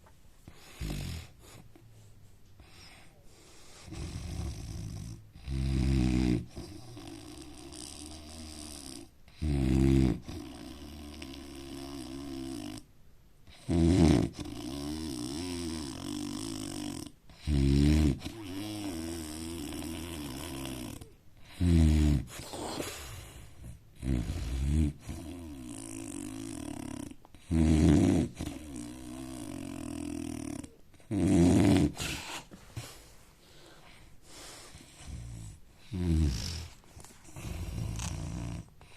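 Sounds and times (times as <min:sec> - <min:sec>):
quiet breathing: 0:00.0 - 0:05.7, 0:18.1 - 0:27.6, 0:31.9 - 0:38.9
man snoring: 0:03.8 - 0:12.8, 0:13.6 - 0:22.8, 0:24.0 - 0:32.0, 0:35.0 - 0:36.8, 0:37.4 - 0:38.7.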